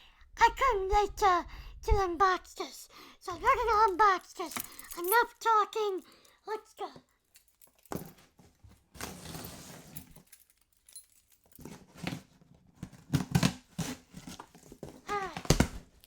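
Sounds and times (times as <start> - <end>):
cardboard flaps knocking and rustling: 11.9 - 16.0
packing tape tearing: 12.8 - 16.0.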